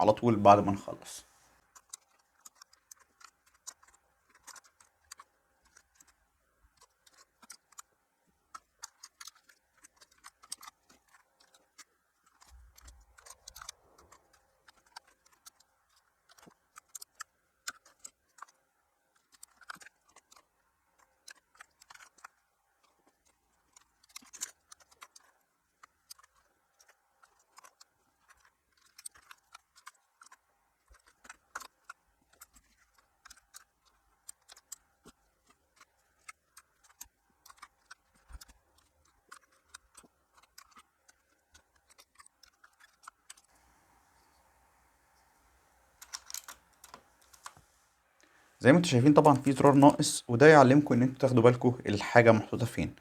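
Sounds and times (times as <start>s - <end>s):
plastic keycaps clicking: 46.0s - 47.5s.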